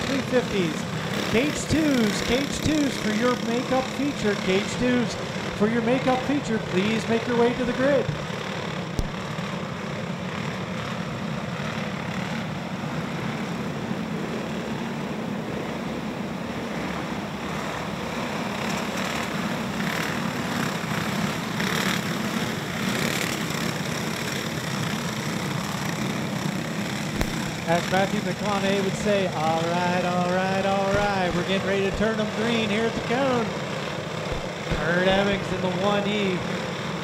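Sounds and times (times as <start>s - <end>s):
go-kart engines droning: 0.0s - 37.0s.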